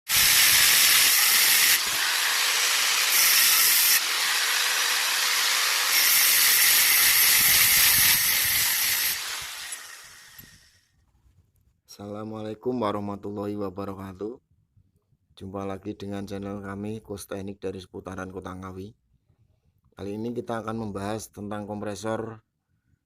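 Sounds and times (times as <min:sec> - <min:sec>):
loud steady hiss: 0:00.1 - 0:10.6.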